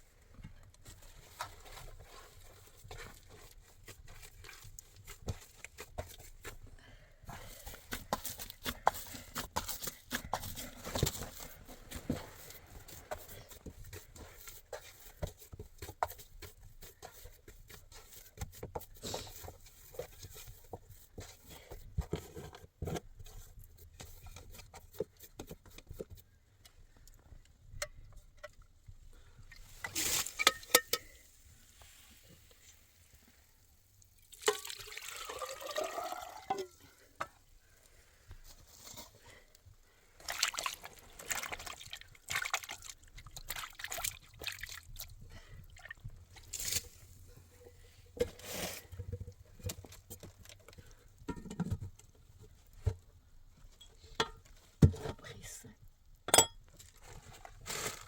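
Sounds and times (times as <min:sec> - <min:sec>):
liquid pouring into container: 0:34.2 - 0:36.8.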